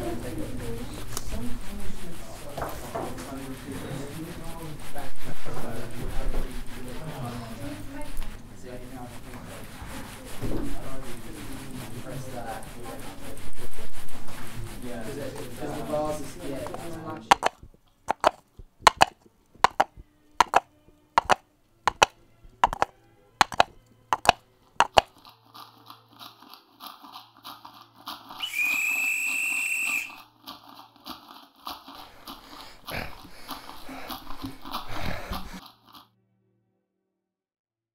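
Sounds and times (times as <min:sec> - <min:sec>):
high whistle: 0:28.4 - 0:30.3.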